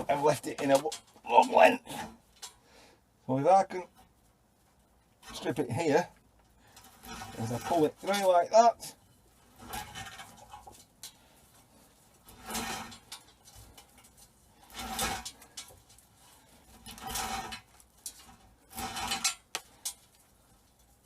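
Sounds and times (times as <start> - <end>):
cable scraping through stripping block: 6.7 - 20.9.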